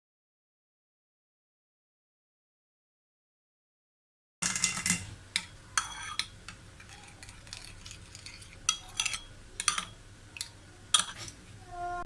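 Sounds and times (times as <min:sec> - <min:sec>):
spoon clinking on a strainer: 0:04.4 - 0:11.3
spoon scraping a bowl: 0:04.4 - 0:11.4.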